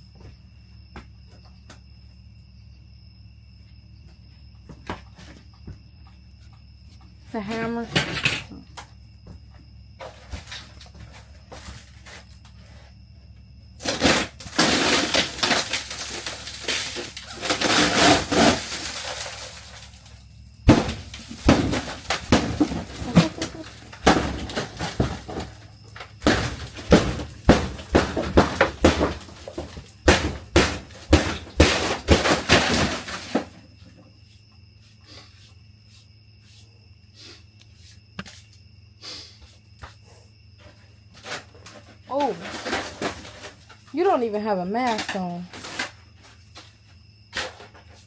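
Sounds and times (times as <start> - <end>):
wood cracking and tearing: 13.8 - 20.1
hammer blows and breaking: 20.7 - 25.6, 26.2 - 33.5.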